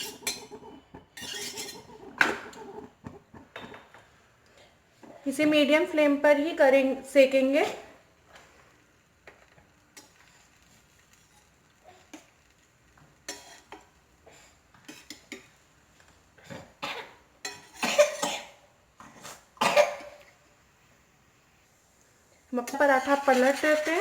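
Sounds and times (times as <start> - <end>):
utensil scraping iron griddle: 0.0 - 2.9, 13.2 - 13.8, 22.6 - 24.0
person coughing: 19.6 - 20.2.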